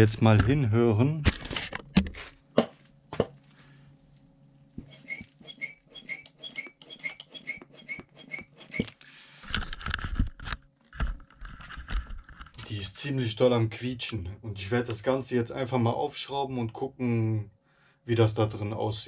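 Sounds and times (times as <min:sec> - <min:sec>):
rough rubbing sound: 0:04.8 - 0:09.0
seatpost squeaking: 0:04.8 - 0:09.0.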